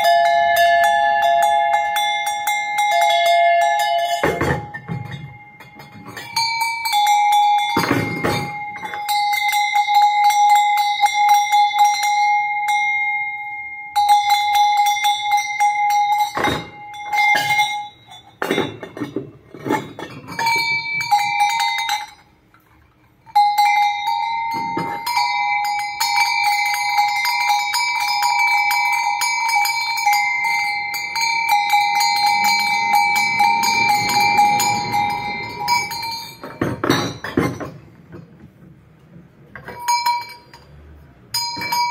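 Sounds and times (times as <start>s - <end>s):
metal animal bells ringing: 0.0s - 38.6s, 39.5s - 41.9s.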